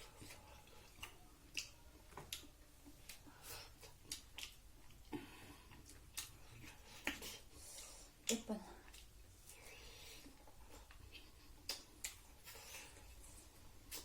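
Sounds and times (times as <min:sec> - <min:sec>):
chewing clicks and smacks: 0:00.2 - 0:05.0, 0:05.7 - 0:07.3, 0:10.9 - 0:12.3.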